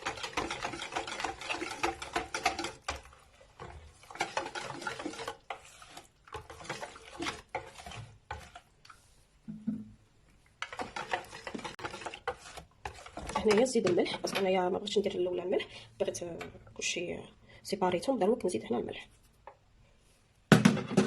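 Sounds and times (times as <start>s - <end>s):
whisk beating batter in bowl: 0.0s - 9.2s, 10.6s - 14.6s.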